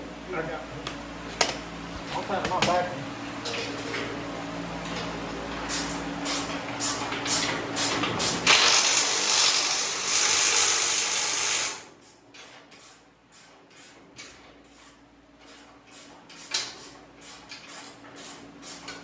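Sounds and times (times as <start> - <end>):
ratchet wrench clicking: 8.5 - 11.8.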